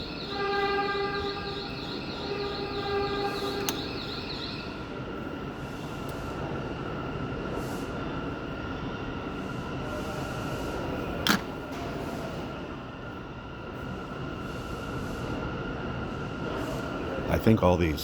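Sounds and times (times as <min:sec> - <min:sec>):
subway train rumble: 0:00.0 - 0:18.0.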